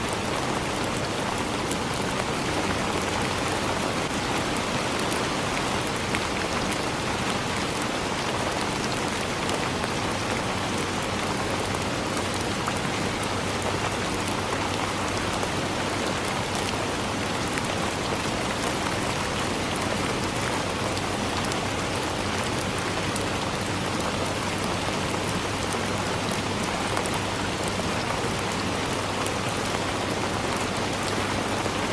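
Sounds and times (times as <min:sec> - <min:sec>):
rain pattering on leaves: 0:00.0 - 0:31.9.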